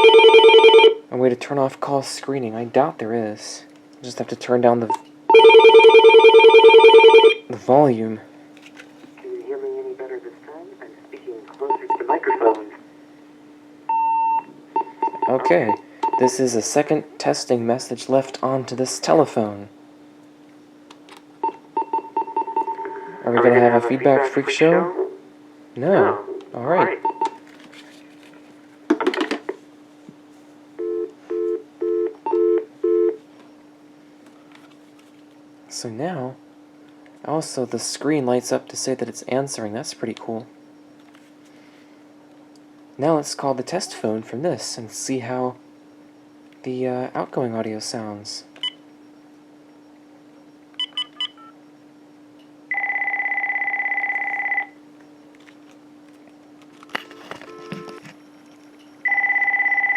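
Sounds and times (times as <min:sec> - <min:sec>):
faint steady hum: 0:00.0 - 0:59.9
phone keypad beeps: 0:13.9 - 0:16.4, 0:50.8 - 0:51.6, 0:57.4 - 0:59.9.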